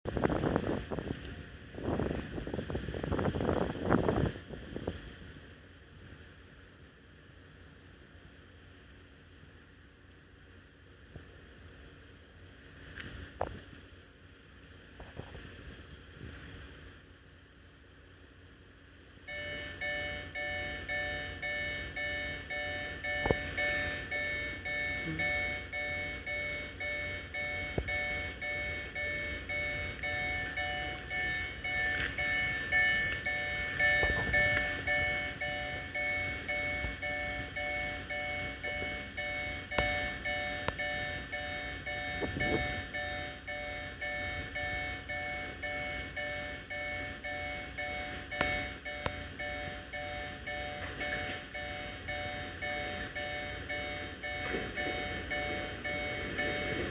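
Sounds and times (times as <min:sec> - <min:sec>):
level crossing warning bell: 0:00.4 - 0:04.3, 0:19.2 - 0:56.9.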